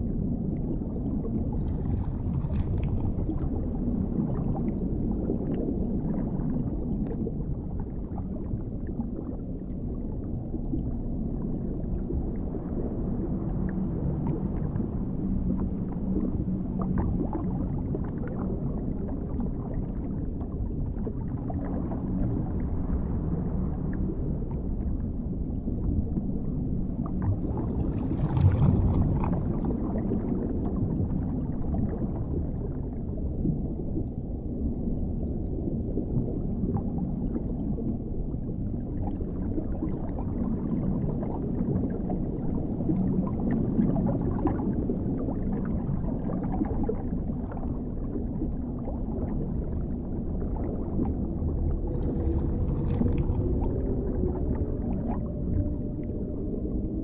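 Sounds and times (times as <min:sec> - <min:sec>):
deep underwater rumble: 0:00.0 - 0:57.0
muffled gurgling: 0:00.0 - 0:57.0
low drawn-out tonal moan: 0:46.8 - 0:57.0.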